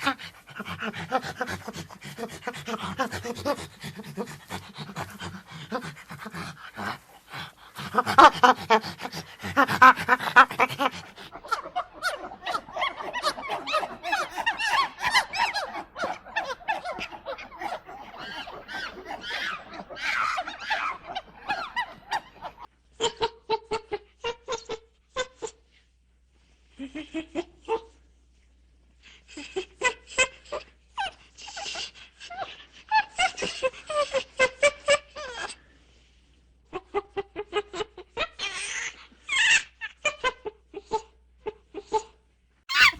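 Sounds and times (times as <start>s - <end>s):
monkey panting: 0.0s - 22.7s, 31.0s - 34.6s
monkeys chirping: 0.0s - 22.7s.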